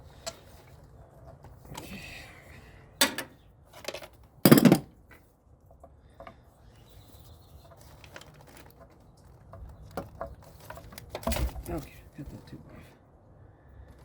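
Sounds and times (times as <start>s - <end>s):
metal tools clanking: 3.0s - 4.9s.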